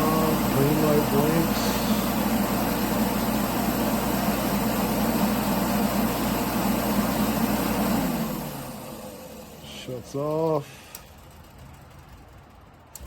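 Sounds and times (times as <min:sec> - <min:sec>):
heater blower fan whirring: 0:00.0 - 0:13.0.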